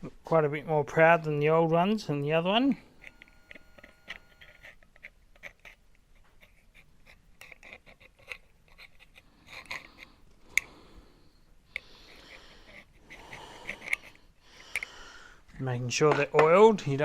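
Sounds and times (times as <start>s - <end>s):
small parts clicking and scraping: 3.0s - 10.8s, 11.7s - 16.4s.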